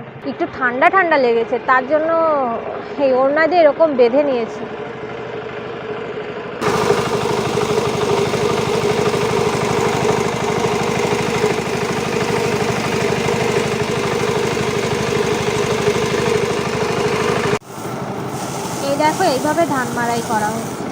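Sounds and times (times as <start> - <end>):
threshing machine engine running: 4.5 - 20.9.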